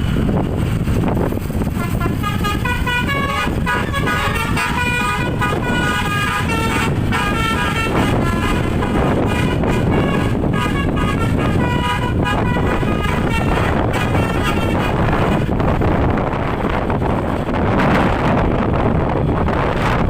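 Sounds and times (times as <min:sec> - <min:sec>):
bus rumbling on the road: 0:00.0 - 0:20.0
bus horn playing a tune: 0:01.6 - 0:17.1.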